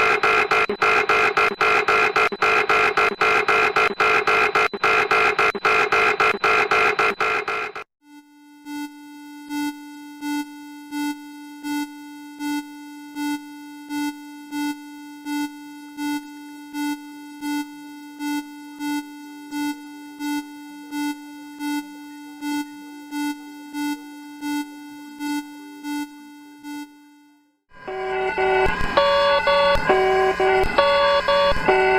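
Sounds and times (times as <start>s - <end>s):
repeating loud beep: 0.0s - 7.8s, 27.9s - 31.9s
rapidly pulsing alarm: 0.0s - 27.1s, 27.7s - 31.9s.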